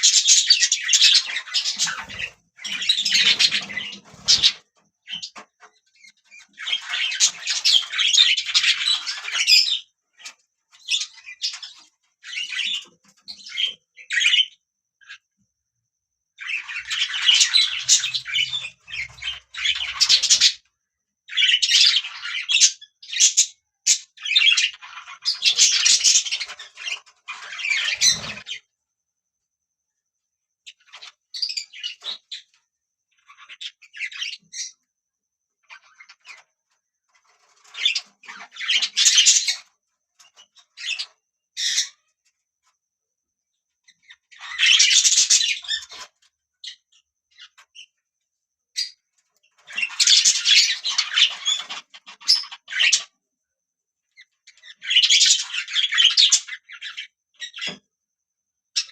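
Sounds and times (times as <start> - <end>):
budgerigars chirping: 0.0 - 15.2, 16.4 - 20.6, 21.3 - 28.6, 33.2 - 34.8, 37.4 - 39.7, 40.3 - 42.1, 44.0 - 47.7, 48.8 - 53.1, 54.5 - 57.8.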